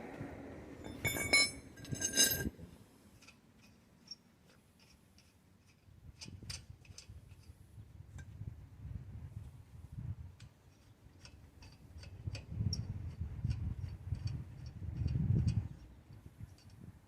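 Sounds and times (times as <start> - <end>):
ringing metal clinks: 0.8 - 2.5.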